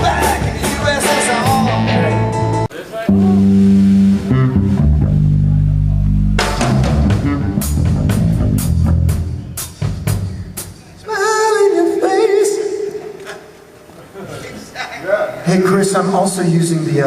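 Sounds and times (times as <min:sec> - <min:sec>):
bass guitar low note: 0:01.4 - 0:09.4
drum kit loose hits: 0:06.4 - 0:10.7.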